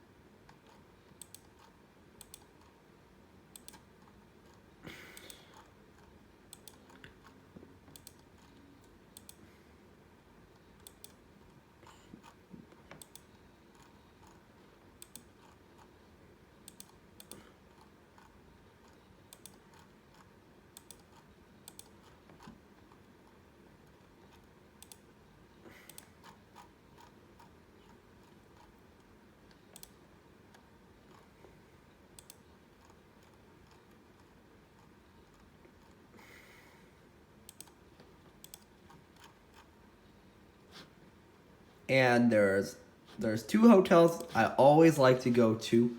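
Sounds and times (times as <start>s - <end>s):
computer mouse clicking: 0.4s - 2.8s, 3.5s - 9.5s, 10.5s - 16.0s, 16.6s - 25.2s, 25.8s - 31.3s, 32.1s - 36.0s, 37.4s - 39.8s.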